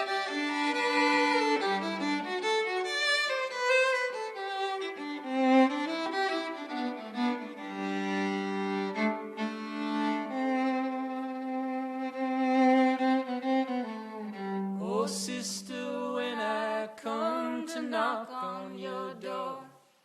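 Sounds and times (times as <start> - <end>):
bowed violin melody: 0.0 - 15.6.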